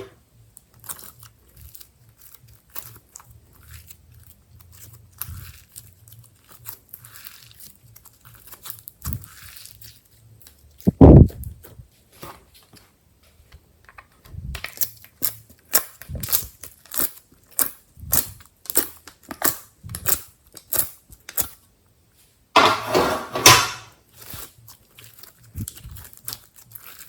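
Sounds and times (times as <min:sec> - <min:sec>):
slime squelching: 0:00.0 - 0:11.8, 0:14.5 - 0:21.6, 0:23.6 - 0:27.0
slime clicking and popping: 0:14.6 - 0:21.6.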